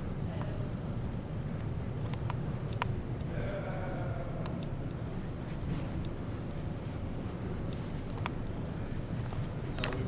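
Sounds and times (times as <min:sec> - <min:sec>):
exhibition hall hum: 0:00.0 - 0:10.0
faint distant voice: 0:03.3 - 0:04.6.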